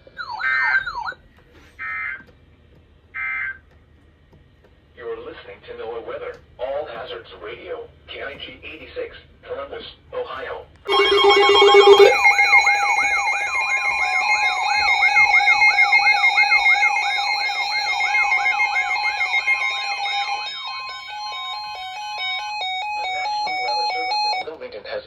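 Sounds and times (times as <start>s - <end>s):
weather radio alert alarm: 10.9s - 24.5s.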